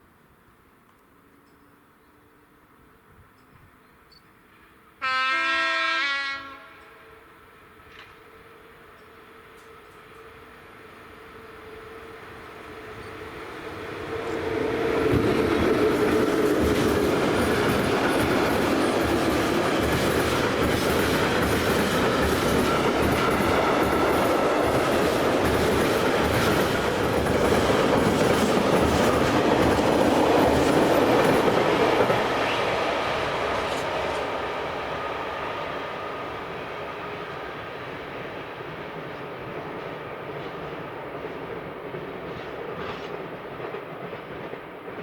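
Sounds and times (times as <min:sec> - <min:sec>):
train wheels clacking over joints: 0:15.1 - 0:32.5.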